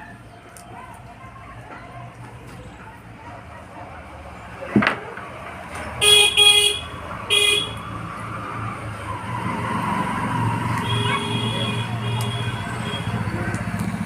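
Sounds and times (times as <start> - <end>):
road traffic: 0.0 - 14.0
vehicle horn tooting: 6.0 - 7.8, 10.8 - 13.3.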